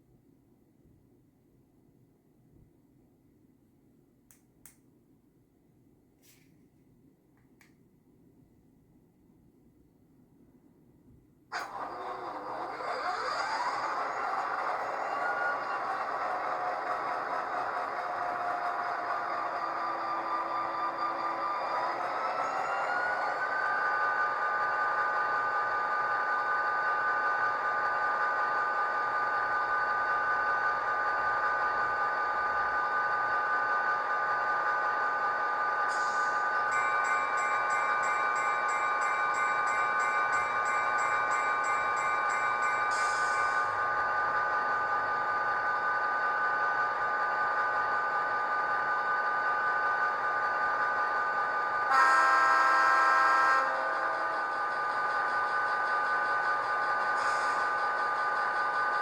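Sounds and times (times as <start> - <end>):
diesel locomotive engine running: 11.5 - 59.0
loud horn chord: 51.9 - 54.3.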